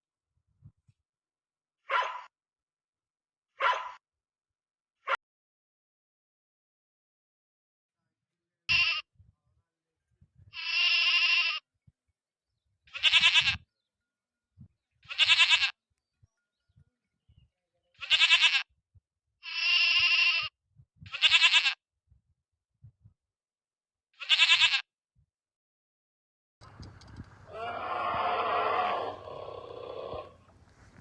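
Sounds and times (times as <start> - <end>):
farm animal bleating: 8.7 - 9.1, 10.5 - 11.6, 12.9 - 13.6, 15.0 - 15.8, 18.0 - 18.7, 19.4 - 20.5, 21.1 - 21.8, 24.2 - 24.9, 26.6 - 31.0.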